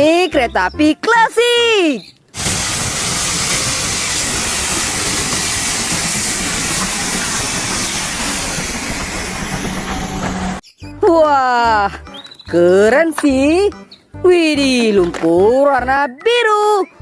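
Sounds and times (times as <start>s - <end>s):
steam locomotive hissing steam: 2.4s - 10.6s.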